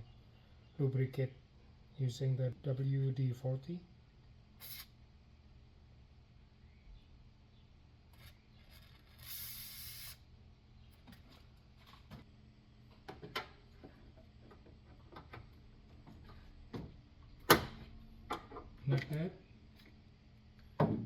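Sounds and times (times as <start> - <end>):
aerosol spray hiss: 4.6 - 4.9, 9.2 - 10.2.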